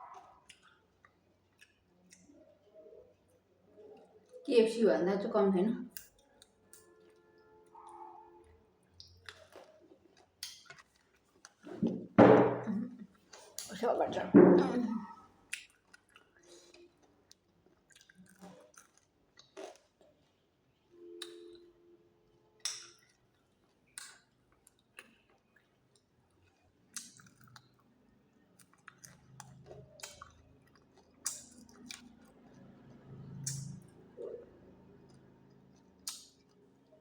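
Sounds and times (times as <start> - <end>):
person chewing: 0.0 - 2.6, 9.0 - 11.9, 15.5 - 20.4, 22.6 - 37.0.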